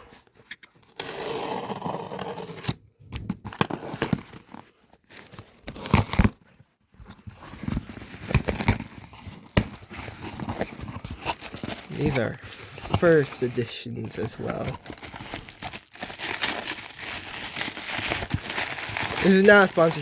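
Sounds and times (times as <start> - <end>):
packaging tearing and crinkling: 5.2 - 6.4, 7.6 - 20.0.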